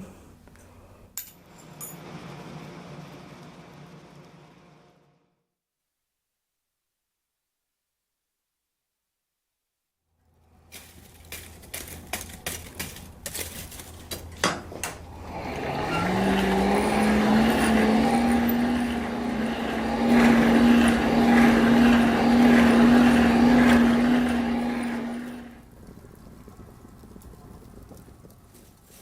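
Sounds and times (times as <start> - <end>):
electric motor whining: 15.0 - 25.6.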